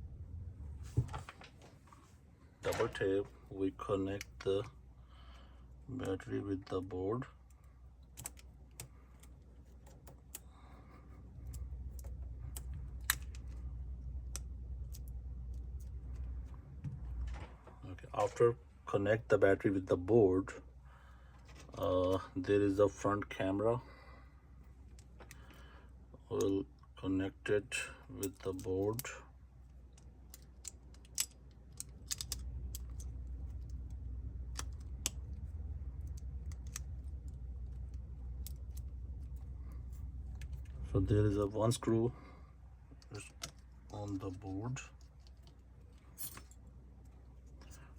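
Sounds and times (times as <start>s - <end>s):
low steady hum: 0.0s - 47.9s
low steady rumble: 0.0s - 47.9s
tools clicking on phone parts: 7.6s - 13.6s, 29.7s - 40.7s, 43.0s - 44.2s.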